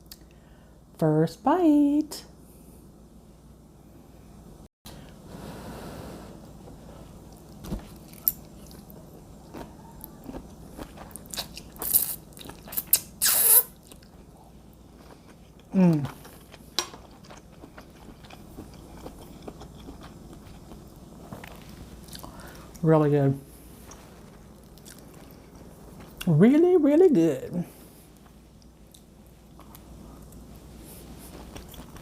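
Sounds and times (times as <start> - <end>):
person humming mmm: 15.7 - 16.2.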